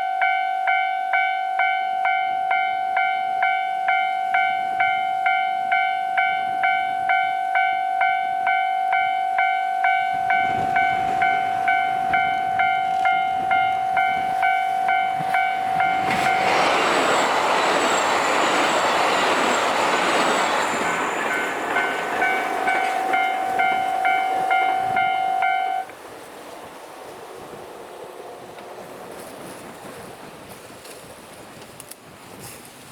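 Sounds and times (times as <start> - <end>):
level crossing alarm chime: 0.0 - 25.9
train rumbling past: 3.9 - 32.4.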